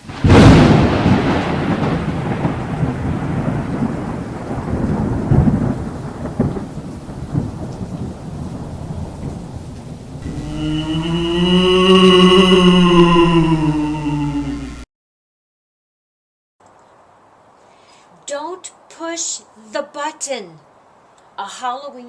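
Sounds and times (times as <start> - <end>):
rain: 0.0 - 11.7, 16.6 - 22.0
rolling thunder rumble: 0.0 - 14.0.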